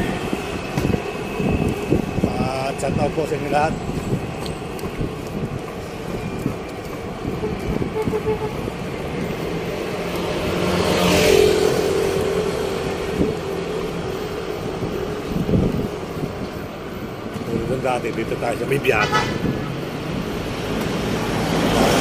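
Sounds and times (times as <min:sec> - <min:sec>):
city street traffic: 0:00.0 - 0:22.0
vehicle passing close: 0:07.2 - 0:16.4, 0:18.7 - 0:22.0.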